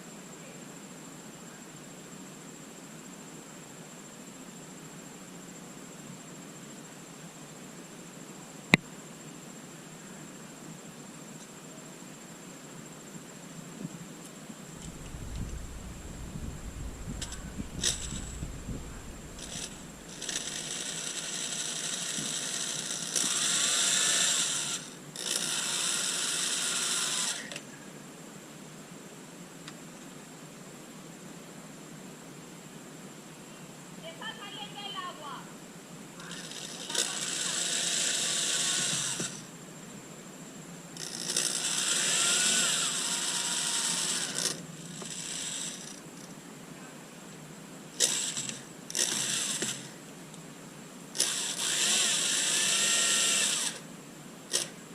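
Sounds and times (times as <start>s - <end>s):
power drill driving screw: 17.2s - 18.4s, 19.2s - 27.6s, 36.2s - 39.4s, 41.0s - 46.0s, 48.0s - 49.9s, 51.2s - 53.8s, 54.5s - 54.7s.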